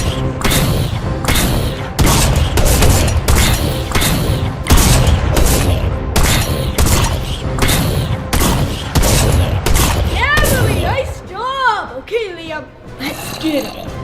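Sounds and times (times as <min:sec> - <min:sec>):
action music with heavy drums: 0:00.0 - 0:11.9
shot-like bangs: 0:00.4 - 0:10.0.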